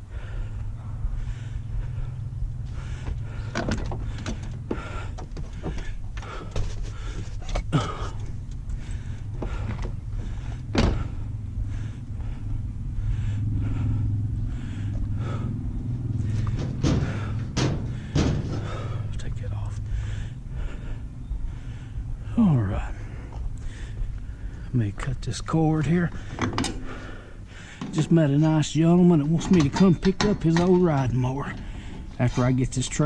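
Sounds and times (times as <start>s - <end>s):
low engine rumble: 0.0s - 33.0s
sharp knocks and clanks: 2.8s - 8.0s, 8.8s - 11.3s, 16.2s - 19.6s, 27.8s - 28.2s, 29.3s - 32.1s.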